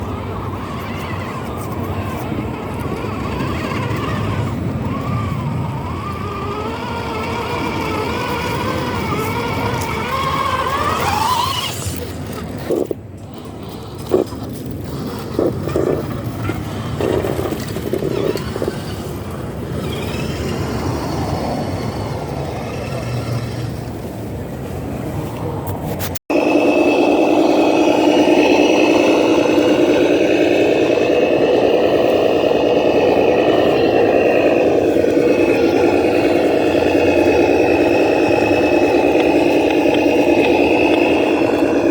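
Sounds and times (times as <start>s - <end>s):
model truck motor whine: 0.0s - 24.6s, 26.3s - 41.9s
voices: 0.0s - 41.9s
low rumble: 26.3s - 41.9s.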